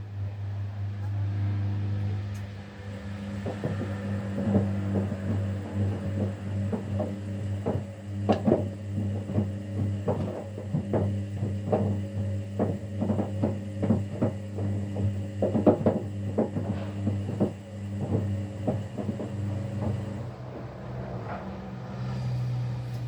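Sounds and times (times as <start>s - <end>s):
washing machine motor humming: 0.0s - 23.0s
laundry knocking in drum: 2.9s - 20.4s.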